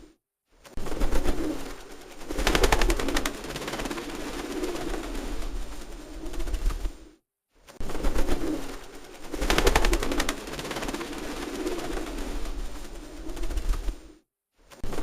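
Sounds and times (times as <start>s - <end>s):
pigeons cooing: 1.0s - 6.6s, 8.0s - 14.1s.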